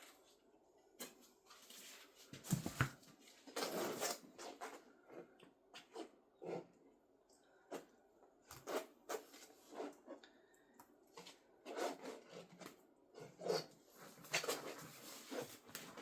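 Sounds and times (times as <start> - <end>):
faint taps and scrapes: 1.0 - 16.0.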